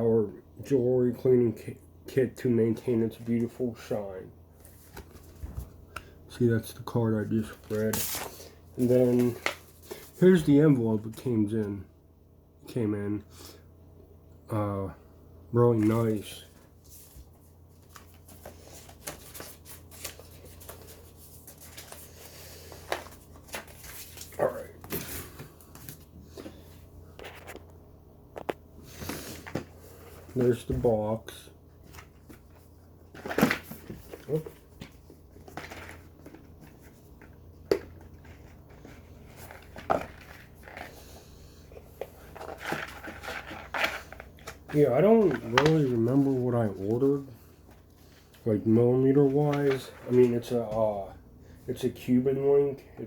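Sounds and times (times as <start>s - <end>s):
paper and cardboard rustling: 4.6s - 5.8s, 7.2s - 10.6s, 15.7s - 27.6s, 28.9s - 31.2s, 31.8s - 50.7s.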